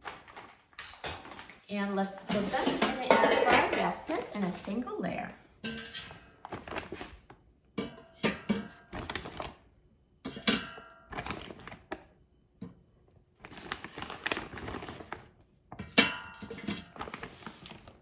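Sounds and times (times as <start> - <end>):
rustling and crinkling: 0.0 - 4.9, 5.9 - 7.4, 8.9 - 9.6, 11.1 - 12.1, 13.4 - 18.0.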